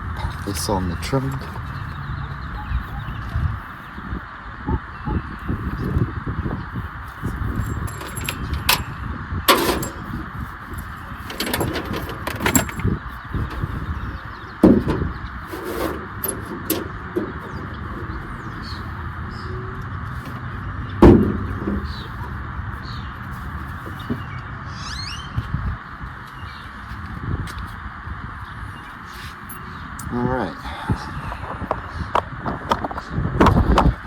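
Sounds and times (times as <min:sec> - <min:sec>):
loud thumps: 0:11.2 - 0:18.9, 0:20.3 - 0:22.2.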